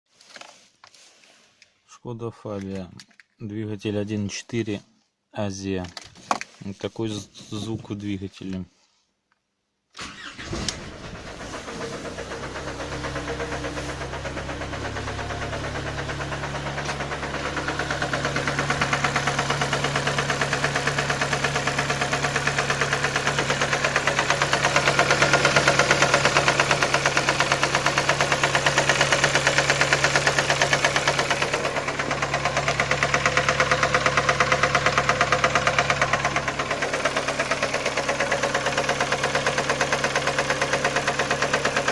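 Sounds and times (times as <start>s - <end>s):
car engine running: 11.0s - 41.9s
rapid metallic engine knock: 12.4s - 41.9s.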